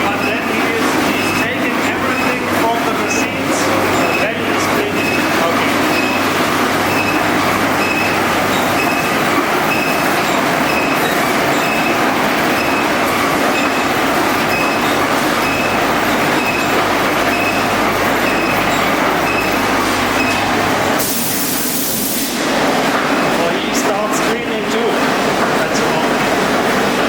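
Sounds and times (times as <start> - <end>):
factory machinery humming: 0.0 - 27.0
high squeak of rotating part: 3.9 - 6.3, 6.9 - 12.0, 14.5 - 15.8.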